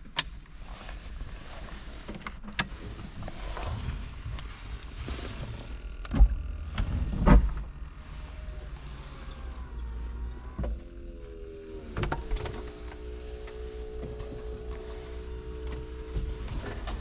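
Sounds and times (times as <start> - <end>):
hydraulic pump humming: 3.6 - 17.0.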